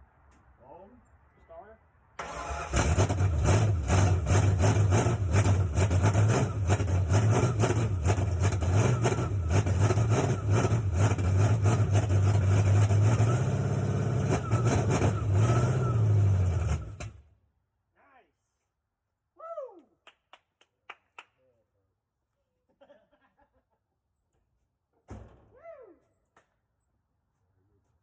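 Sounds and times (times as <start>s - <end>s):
truck engine starting and revving: 2.2s - 17.2s.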